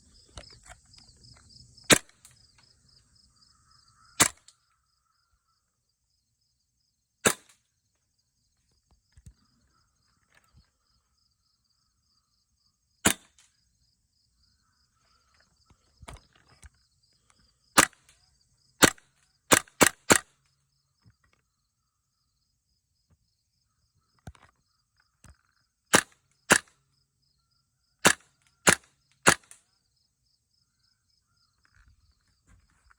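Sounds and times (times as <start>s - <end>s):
airsoft rifle shots: 1.9s - 2.3s, 4.2s - 4.5s, 7.2s - 7.6s, 13.0s - 13.4s, 17.8s - 18.1s, 18.8s - 20.3s, 25.9s - 26.7s, 28.0s - 29.6s.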